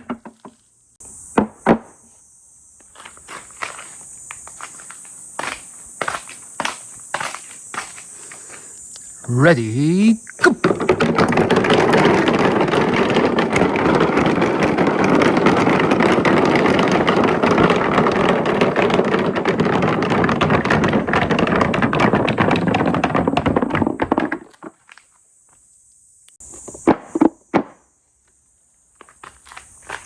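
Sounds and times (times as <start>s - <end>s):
crickets chirring: 0.0s - 30.0s
marbles rattling down marble run: 9.3s - 24.5s.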